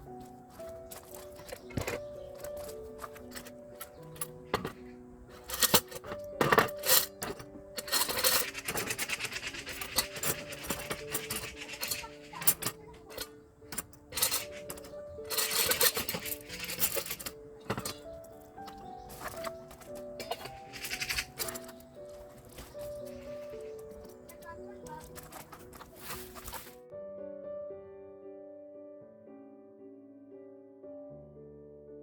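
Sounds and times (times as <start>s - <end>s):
soft background music: 0.0s - 32.0s
short scraping noises: 0.6s - 26.8s.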